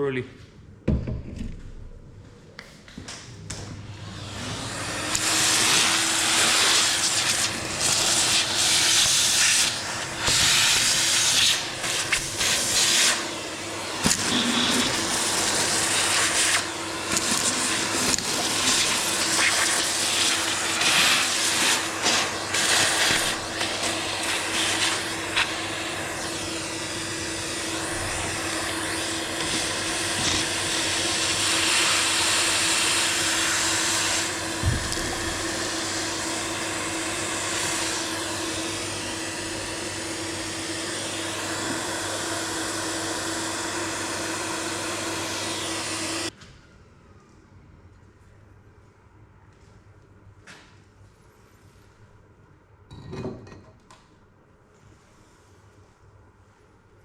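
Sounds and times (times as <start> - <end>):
electric motor humming: 22.0 - 46.3.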